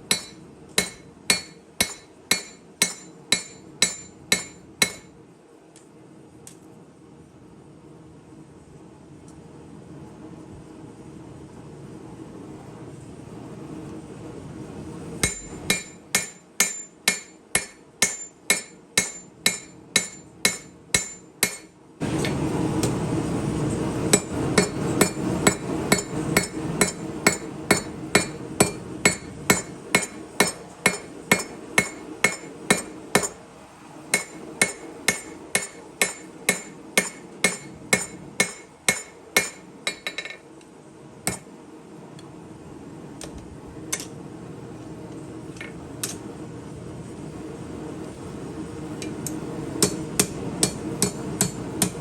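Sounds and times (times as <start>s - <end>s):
hammer striking steel on anvil: 0.0s - 5.2s, 15.2s - 22.4s, 24.1s - 33.4s, 34.1s - 40.4s, 41.3s - 41.5s, 49.0s - 52.0s.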